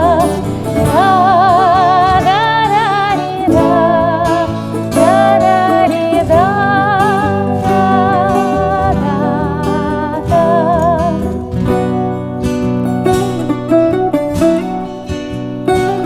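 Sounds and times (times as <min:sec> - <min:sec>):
guitar and bouzouki playing: 0:00.0 - 0:16.0
held melody line with vibrato: 0:00.0 - 0:16.0.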